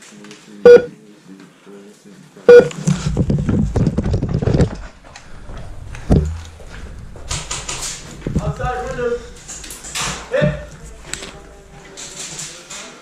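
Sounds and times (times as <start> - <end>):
scuffling handling noise: 2.7 - 13.0
thump: 2.9 - 8.5.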